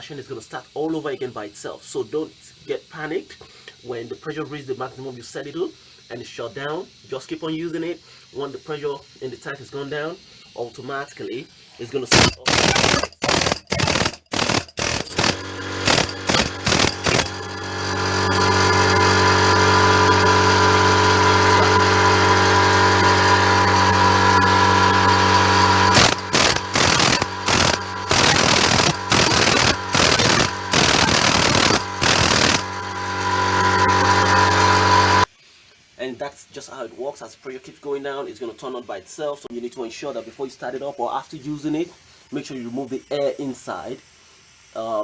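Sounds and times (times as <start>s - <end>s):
air compressor humming: 12.1s - 35.3s
pneumatic hammer: 12.1s - 35.3s.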